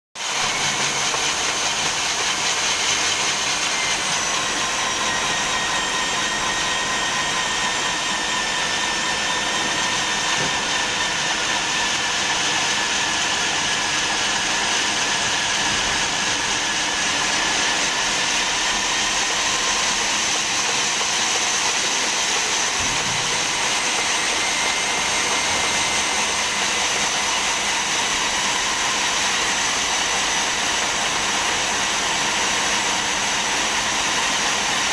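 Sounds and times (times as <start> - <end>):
core drill boring through concrete: 0.2 - 34.9.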